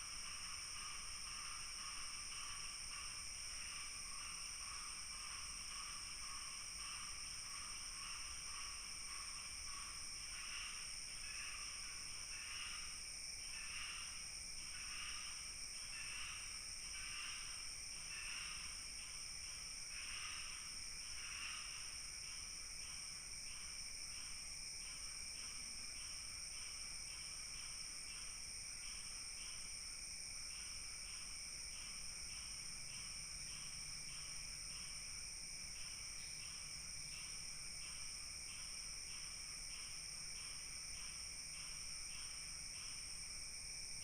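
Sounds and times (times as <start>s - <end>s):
cricket chirping: 0.0s - 44.0s.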